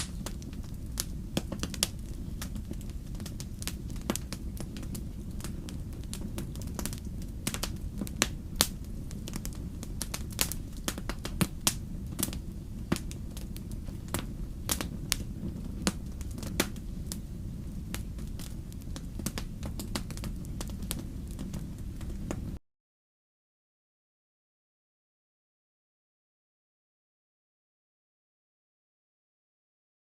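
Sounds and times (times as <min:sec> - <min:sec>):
low steady rumble: 0:00.0 - 0:22.6
wood fire crackling: 0:00.0 - 0:22.6.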